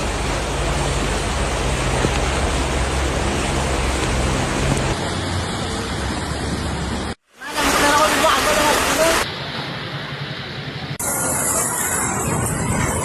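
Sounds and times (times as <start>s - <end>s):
vehicle engine humming low: 0.0s - 7.2s
steady rush of noise: 0.0s - 13.0s.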